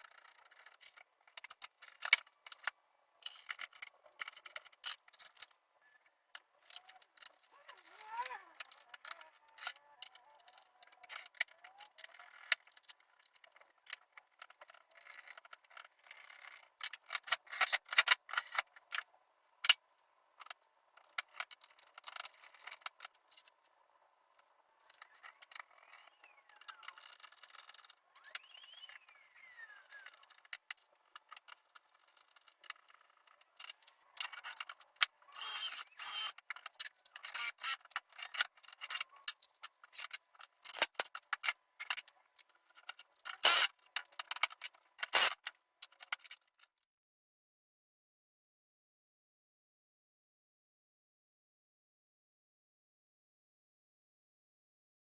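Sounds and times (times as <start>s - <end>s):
metal parts clicking and rattling: 0.0s - 5.6s, 24.4s - 28.5s, 29.9s - 46.6s.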